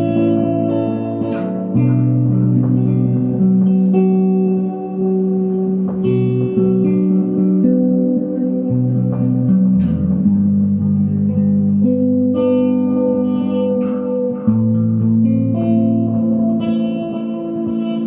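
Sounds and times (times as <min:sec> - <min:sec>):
electric guitar with echo: 0:00.0 - 0:18.0.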